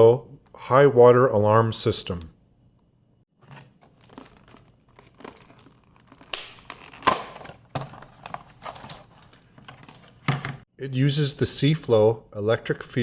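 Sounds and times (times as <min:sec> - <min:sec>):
crinkling and rustling: 0:03.4 - 0:10.7.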